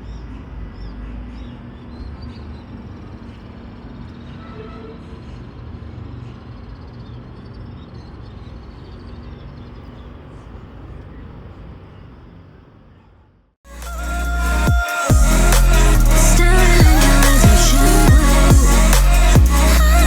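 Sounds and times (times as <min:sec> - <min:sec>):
low outdoor rumble: 0:13.7 - 0:20.0.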